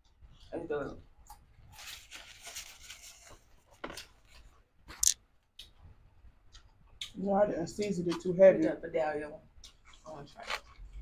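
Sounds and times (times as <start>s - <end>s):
rustling crackle: 1.7s - 4.5s.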